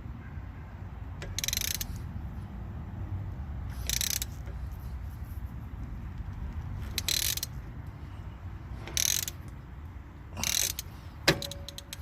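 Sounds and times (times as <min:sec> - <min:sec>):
ratcheting scraping tool strokes: 0:01.2 - 0:02.1, 0:03.7 - 0:05.6, 0:06.8 - 0:07.6, 0:08.8 - 0:09.6, 0:10.4 - 0:12.0.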